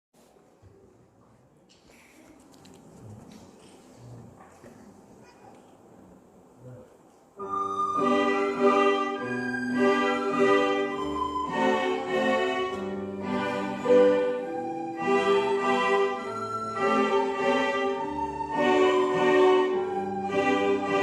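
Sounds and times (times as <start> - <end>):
string orchestra playing: 7.4 - 21.0.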